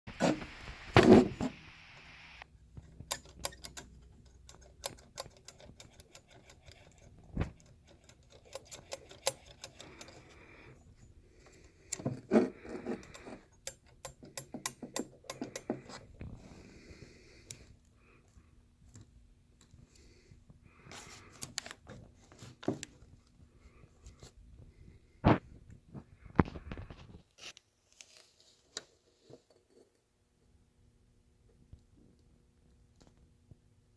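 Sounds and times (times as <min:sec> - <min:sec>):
metallic clicking and rattling: 0:02.8 - 0:10.5, 0:13.0 - 0:16.0.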